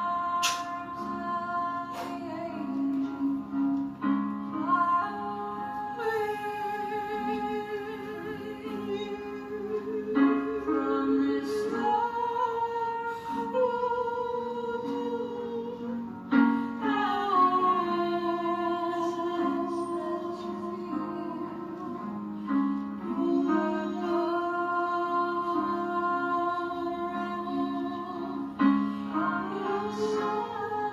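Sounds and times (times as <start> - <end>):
woman singing long notes: 4.6 - 16.0.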